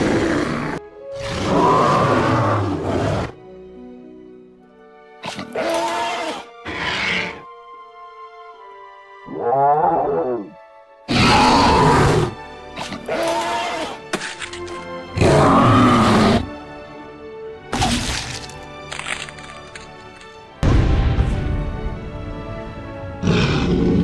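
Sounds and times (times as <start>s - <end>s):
dinosaur roars: 0.0s - 3.4s, 9.3s - 12.4s, 15.2s - 16.5s, 23.2s - 24.0s
background music: 0.0s - 24.0s.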